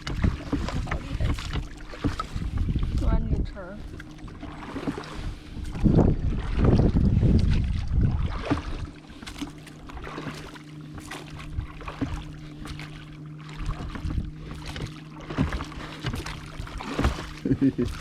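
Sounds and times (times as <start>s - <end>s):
wind rumble on microphone: 0.0s - 9.4s, 11.0s - 12.8s, 13.6s - 18.0s
paddle knocking against hull: 0.0s - 18.0s
steady low hum: 0.0s - 18.0s
water splashing: 0.0s - 18.0s.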